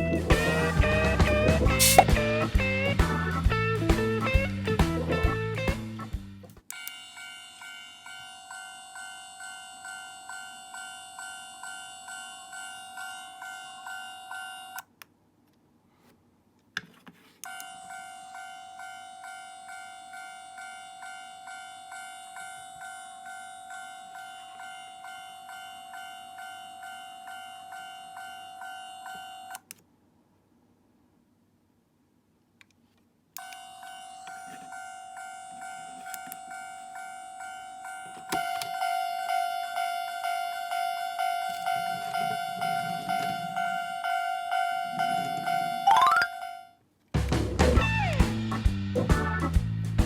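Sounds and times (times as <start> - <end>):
toy crossing warning bell dinging: 6.7 - 14.9, 17.4 - 29.6, 33.4 - 46.8
click: 29.5 - 29.8, 32.6 - 33.6.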